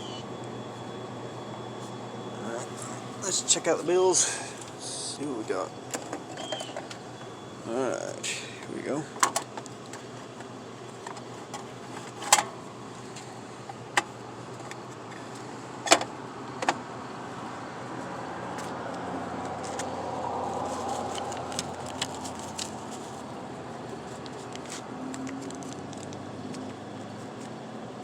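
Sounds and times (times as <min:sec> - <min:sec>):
steady low hum: 0:00.0 - 0:25.1.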